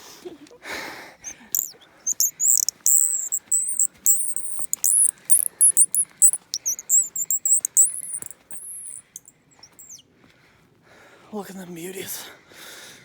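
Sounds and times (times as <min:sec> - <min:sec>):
squeaky bird call chirps: 0:01.3 - 0:10.0.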